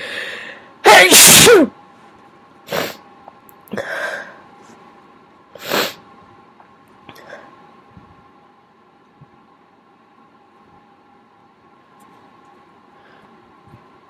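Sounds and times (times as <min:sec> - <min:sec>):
person sneezing: 0:00.9 - 0:01.7, 0:02.7 - 0:03.0
quiet breathy sounds: 0:12.1 - 0:14.0.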